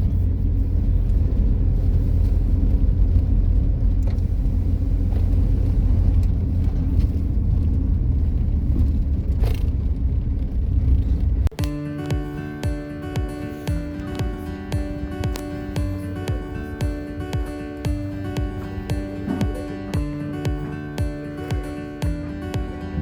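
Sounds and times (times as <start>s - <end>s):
road and wind noise: 0.0s - 23.0s
vehicle rumble: 0.0s - 23.0s
music: 11.5s - 23.0s.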